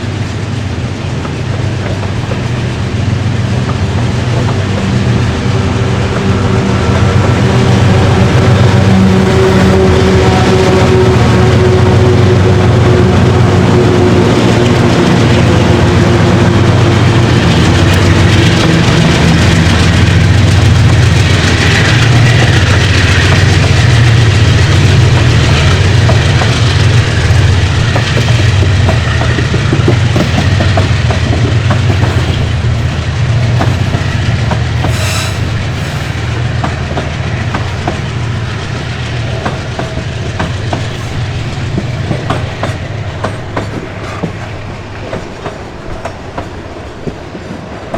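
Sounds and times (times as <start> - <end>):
diesel locomotive engines droning: 0.0 - 47.9.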